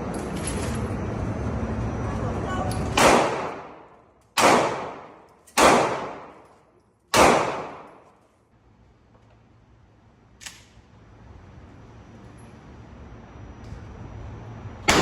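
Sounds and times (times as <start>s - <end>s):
pistol gunshots with echo: 2.9s - 6.5s, 7.1s - 8.0s
faint gunshot: 4.4s - 6.3s, 7.2s - 7.9s.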